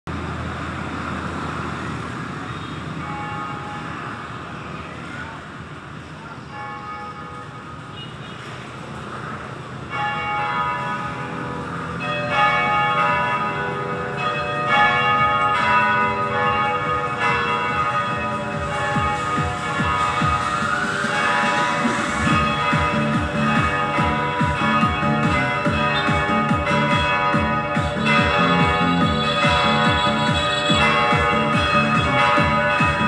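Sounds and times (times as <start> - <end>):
background noise: 0.1 - 25.9
church bells ringing: 3.0 - 4.2, 6.5 - 7.9, 9.8 - 33.0.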